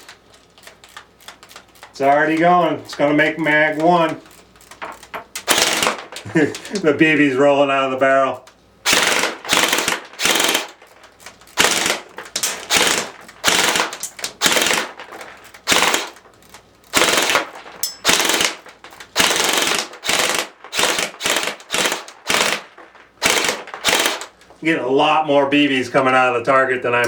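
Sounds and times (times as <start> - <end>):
airsoft gun full-auto bursts: 5.4 - 6.2, 8.8 - 10.8, 11.5 - 15.0, 15.6 - 16.2, 16.8 - 24.4.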